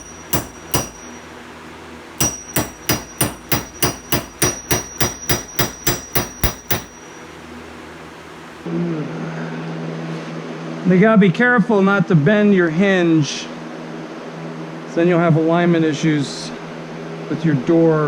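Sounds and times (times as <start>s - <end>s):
hammer striking metal punch: 0.0s - 1.4s, 2.2s - 7.9s.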